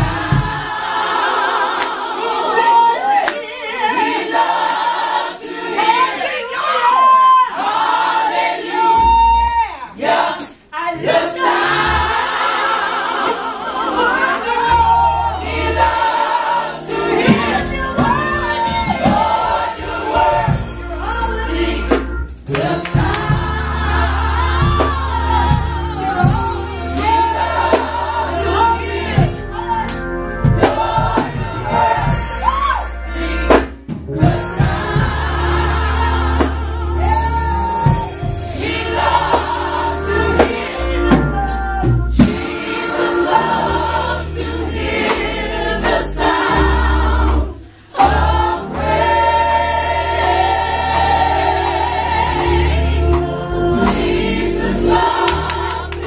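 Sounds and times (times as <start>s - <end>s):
lead voice singing: 0.0s - 33.6s, 34.2s - 56.0s
gospel choir singing: 0.0s - 56.0s
bass line: 16.9s - 56.0s.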